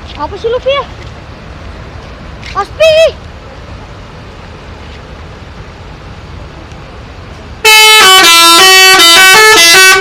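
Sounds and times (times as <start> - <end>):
musical bus air horn: 7.6 - 10.0.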